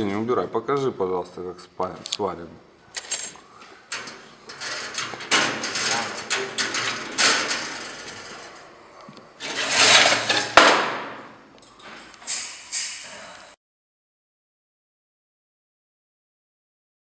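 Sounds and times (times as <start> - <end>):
wire mesh clanking: 3.0 - 8.8, 9.4 - 13.2.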